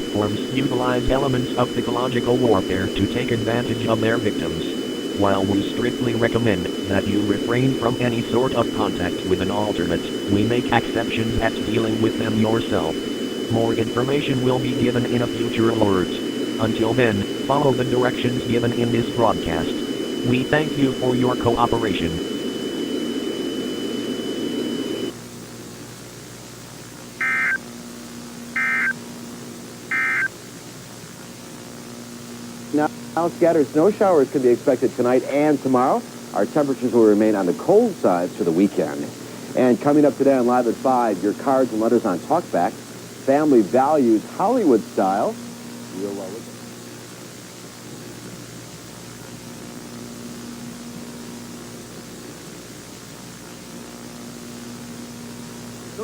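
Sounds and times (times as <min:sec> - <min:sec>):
low hiss: 0:00.0 - 0:25.1
steady high tone: 0:00.0 - 0:25.1, 0:29.9 - 0:30.3
warbling two-tone data bursts: 0:00.0 - 0:25.1, 0:27.2 - 0:27.6, 0:28.6 - 0:28.9, 0:29.9 - 0:30.3
faint low hum: 0:00.0 - 0:25.2
static hiss: 0:00.0 - 0:56.0.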